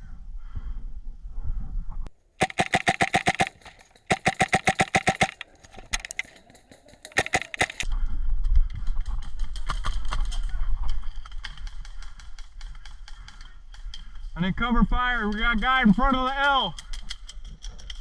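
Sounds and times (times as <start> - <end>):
airsoft rifle firing: 2.4 - 7.9.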